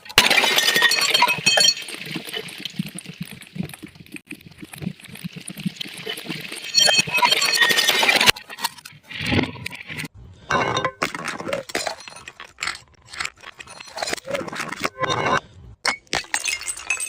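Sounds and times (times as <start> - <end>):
glass bottles breaking: 0.0 - 3.4, 5.9 - 8.6, 15.9 - 17.0.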